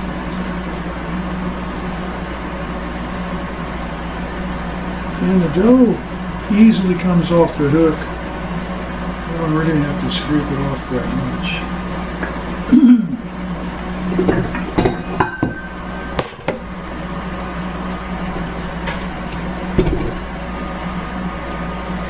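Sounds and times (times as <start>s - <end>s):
food dehydrator humming: 0.0s - 22.0s
knocks and clinks of mixer parts: 19.8s - 20.3s.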